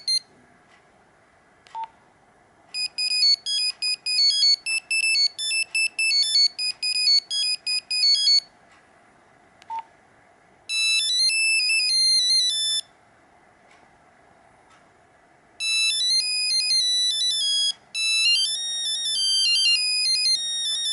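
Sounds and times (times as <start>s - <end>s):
beeping ringtone melody: 0.0s - 0.2s, 2.8s - 8.5s, 10.7s - 12.9s, 15.6s - 20.9s.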